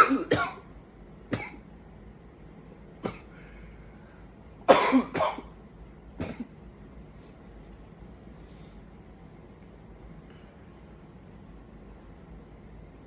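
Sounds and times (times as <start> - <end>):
man coughing: 0.0 - 0.7, 1.4 - 1.6, 3.0 - 3.4, 4.7 - 5.5, 6.2 - 6.5.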